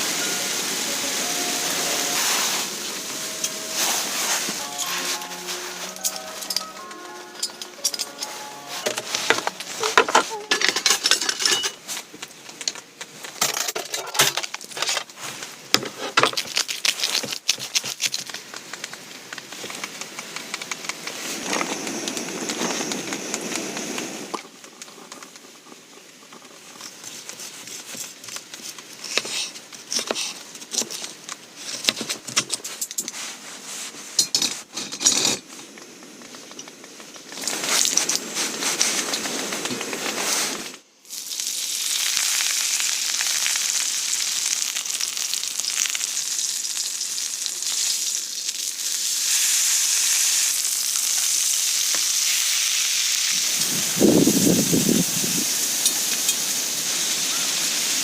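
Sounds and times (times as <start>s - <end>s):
hissing noise: 0.0s - 10.7s, 19.6s - 24.5s
utensils and cookware clinking: 0.0s - 15.1s, 34.2s - 35.6s, 55.8s - 57.5s.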